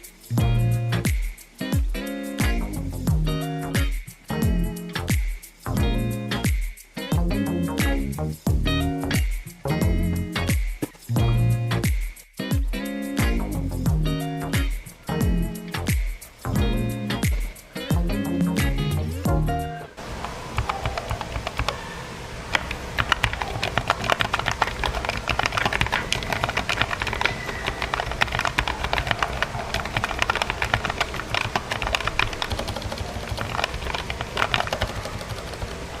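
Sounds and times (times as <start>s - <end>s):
mechanical keyboard typing: 20.6s - 21.8s, 22.5s - 36.0s.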